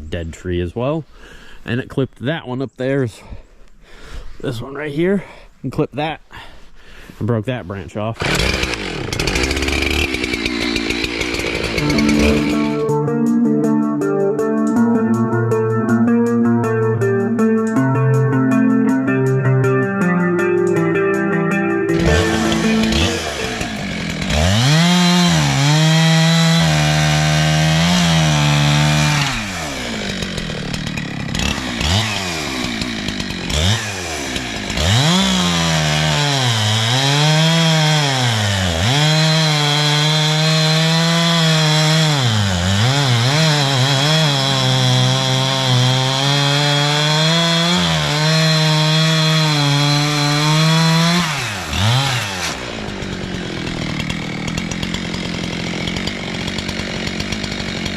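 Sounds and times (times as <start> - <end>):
chainsaw cutting wood: 8.2 - 13.0, 21.9 - 57.9.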